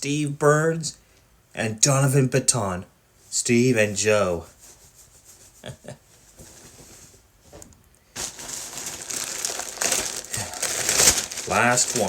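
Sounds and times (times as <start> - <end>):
plastic packaging crinkling: 8.1 - 12.0.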